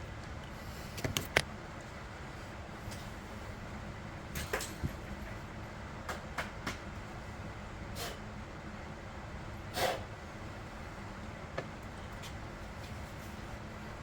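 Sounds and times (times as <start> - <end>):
steady low hum: 0.0 - 14.0
light clicks and knocks of parts: 0.2 - 1.9.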